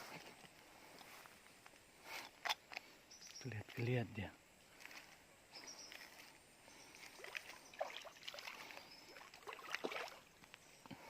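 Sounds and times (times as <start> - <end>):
water splashing and sloshing: 6.9 - 10.6.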